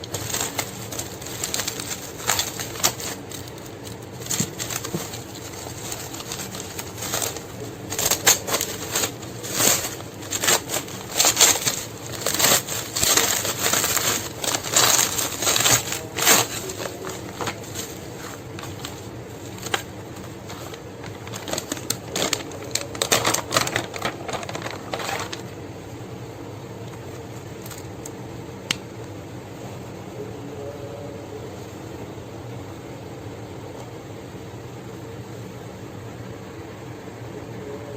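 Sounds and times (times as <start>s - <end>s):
packaging crinkling and clicking: 0.0s - 25.6s, 26.8s - 28.8s
steady low hum: 0.0s - 37.9s.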